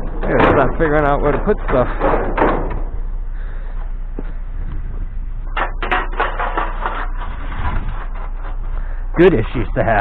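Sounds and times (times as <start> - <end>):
vehicle driving rumble: 0.0 - 10.0
person speaking: 9.1 - 10.0.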